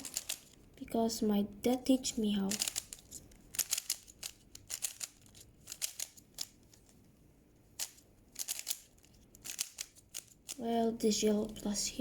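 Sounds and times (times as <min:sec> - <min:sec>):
puzzle cube clicking: 0:00.0 - 0:00.8, 0:02.5 - 0:06.9, 0:07.8 - 0:10.6.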